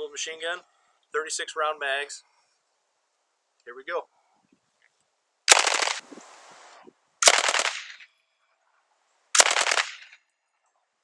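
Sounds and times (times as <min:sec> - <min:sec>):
submachine gun automatic bursts: 0:05.5 - 0:06.1, 0:07.2 - 0:08.0, 0:09.4 - 0:10.1.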